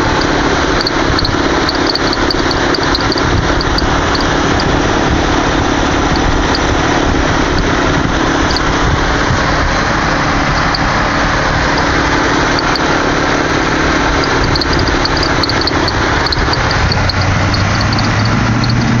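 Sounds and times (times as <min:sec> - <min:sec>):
car engine running: 0:00.0 - 0:19.0
high chirps from belt drive: 0:00.0 - 0:19.0.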